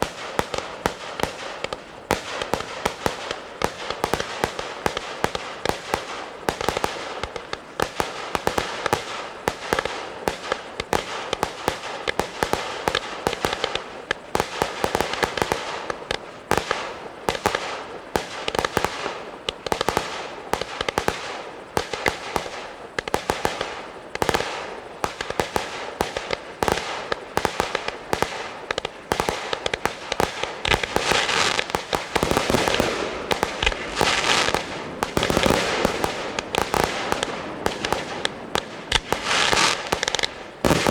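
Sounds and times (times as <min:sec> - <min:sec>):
firework bursts and bangs: 0:00.0 - 0:40.9
fireworks crackling: 0:00.0 - 0:40.9.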